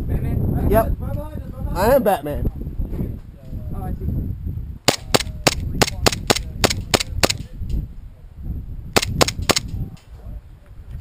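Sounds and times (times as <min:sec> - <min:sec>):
airsoft pistol shots: 0:04.9 - 0:07.5, 0:09.0 - 0:09.8.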